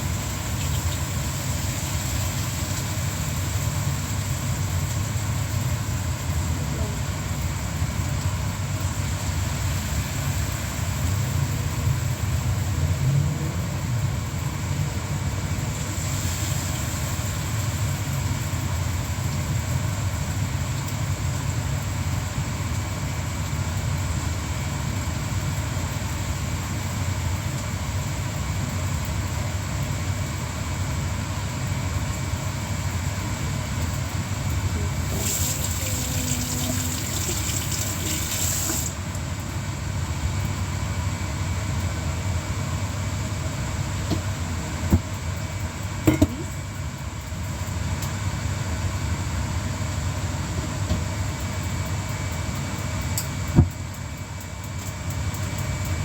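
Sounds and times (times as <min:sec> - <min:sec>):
low mechanical hum: 0:00.0 - 0:56.0
rushing hiss: 0:15.6 - 0:18.2, 0:35.0 - 0:39.0.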